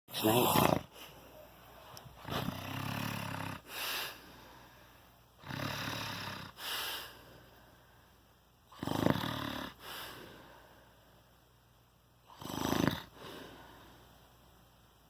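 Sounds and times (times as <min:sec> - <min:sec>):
person snoring: 0:00.2 - 0:00.9, 0:02.2 - 0:04.2, 0:05.4 - 0:07.2, 0:08.7 - 0:10.5, 0:12.3 - 0:13.9.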